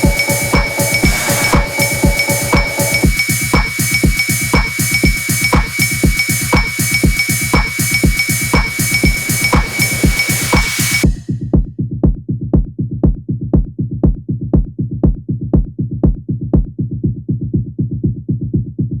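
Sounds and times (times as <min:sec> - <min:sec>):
electronic dance music: 0:00.0 - 0:11.3.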